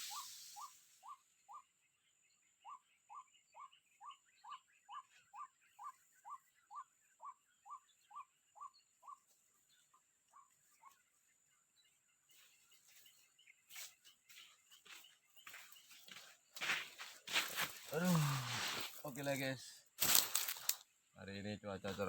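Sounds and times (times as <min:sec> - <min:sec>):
waterhen calls: 0:00.0 - 0:01.6.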